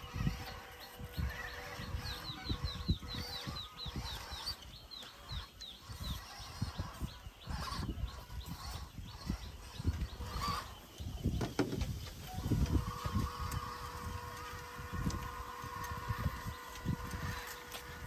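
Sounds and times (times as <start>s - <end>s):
bird chirping rapidly: 0.0s - 14.2s.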